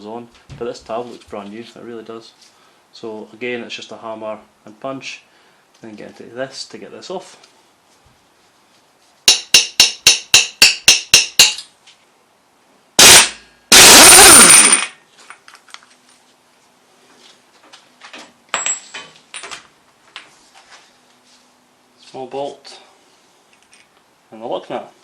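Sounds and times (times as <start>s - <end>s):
hammer striking steel punch: 9.3s - 11.7s, 13.0s - 14.9s
loud bursts of noise: 13.0s - 14.9s
metal parts clicking: 13.0s - 15.8s.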